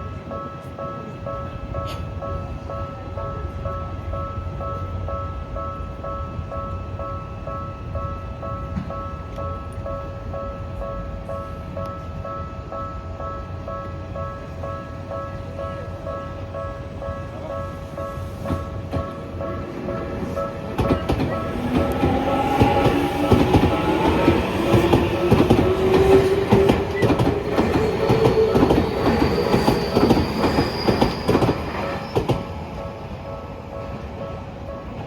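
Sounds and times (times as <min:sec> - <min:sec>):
train wheels clacking over rail joints: 0:18.4 - 0:32.5.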